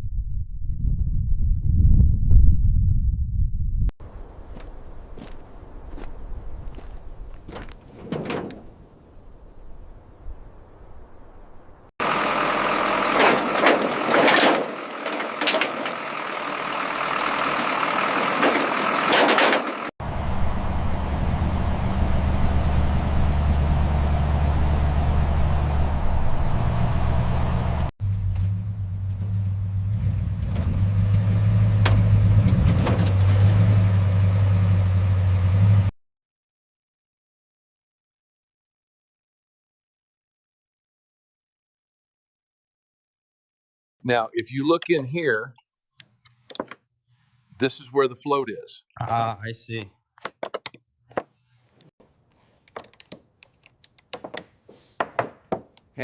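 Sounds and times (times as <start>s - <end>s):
car engine idling: 12.0s - 25.7s, 28.0s - 35.9s
hand tools clicking and knocking: 13.1s - 16.1s, 44.8s - 46.8s, 50.2s - 51.3s, 52.3s - 56.0s.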